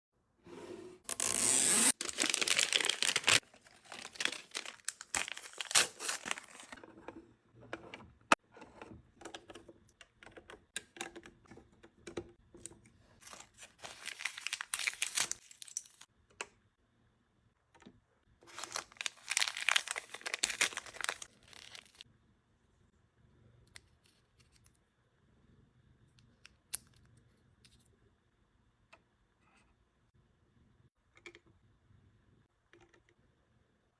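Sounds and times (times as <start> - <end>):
packets tearing and crinkling: 1.1 - 6.8, 13.2 - 16.0, 18.5 - 22.0.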